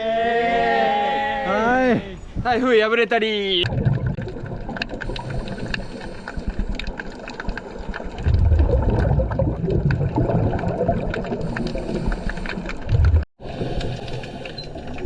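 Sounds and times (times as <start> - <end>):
crackle of fine clicks: 3.6 - 15.0
diver's bubbles gurgling underwater: 3.6 - 15.0.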